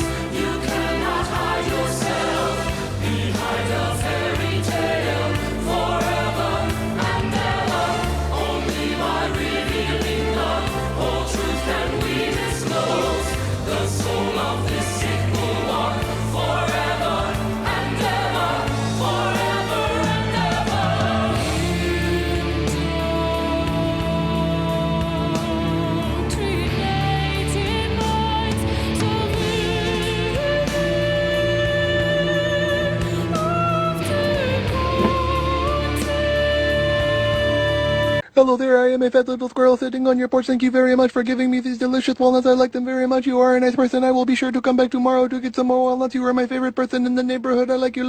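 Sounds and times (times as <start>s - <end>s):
choir singing over a beat: 0.0s - 38.2s.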